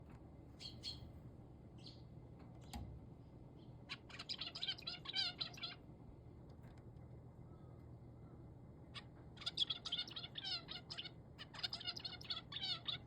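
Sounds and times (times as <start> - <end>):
finch chirping: 0.6 - 1.1, 1.8 - 2.1, 3.9 - 5.8, 8.9 - 13.0.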